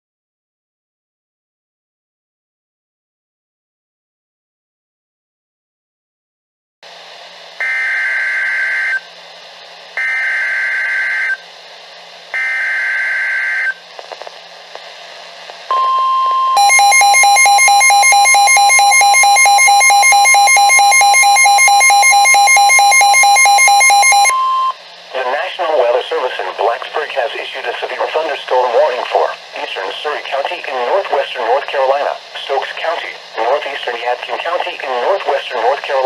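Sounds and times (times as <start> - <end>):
radio hiss: 13.8 - 15.7, 24.8 - 36.0
rapidly pulsing electronic beep: 15.7 - 24.8
steady warning alarm tone: 15.7 - 24.8
warbling digital data tones: 16.6 - 24.7.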